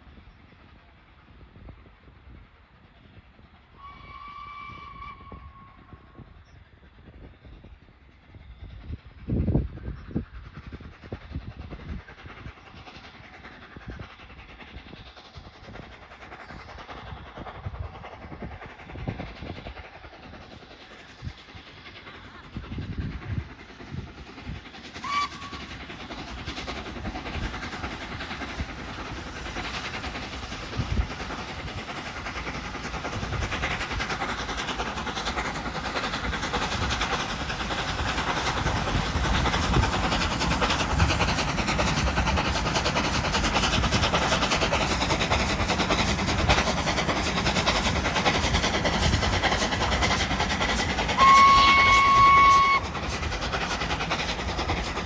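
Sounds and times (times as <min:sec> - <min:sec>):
steam locomotive rumbling: 0:00.0 - 0:55.0
steam whistle: 0:03.8 - 0:05.8, 0:25.0 - 0:25.6, 0:51.2 - 0:52.9
wheels on rails: 0:08.6 - 0:55.0.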